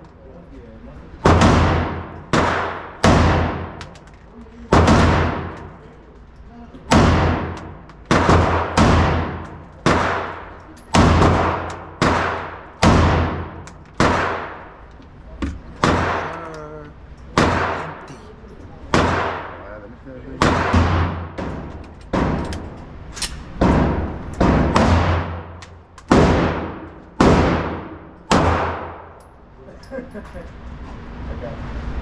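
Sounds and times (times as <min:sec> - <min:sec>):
echoing gunshots: 0:01.2 - 0:03.9, 0:04.7 - 0:05.8, 0:06.9 - 0:14.8, 0:15.8 - 0:16.5, 0:17.3 - 0:18.1, 0:18.9 - 0:19.7, 0:20.3 - 0:29.2.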